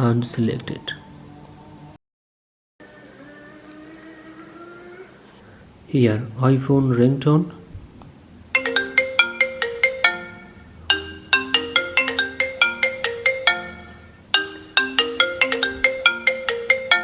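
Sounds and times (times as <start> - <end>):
marimba-like phone ringtone: 8.6 - 17.0.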